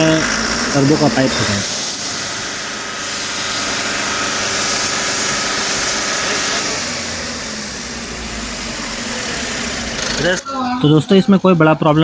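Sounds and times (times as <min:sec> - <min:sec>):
rushing air hiss: 0:00.0 - 0:10.3
diesel truck engine running: 0:00.0 - 0:12.0.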